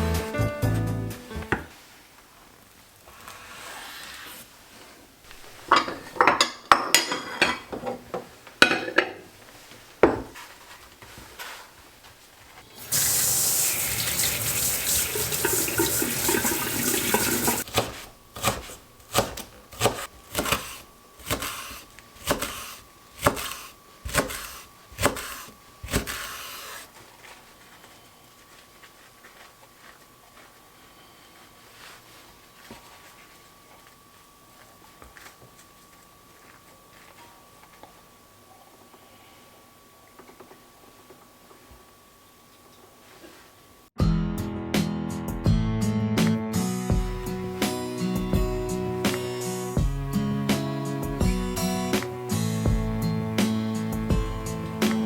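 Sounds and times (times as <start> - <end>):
dishes and utensils clinking: 5.6 - 8.0, 8.6 - 9.2, 15.0 - 17.6
tap running: 12.8 - 18.6.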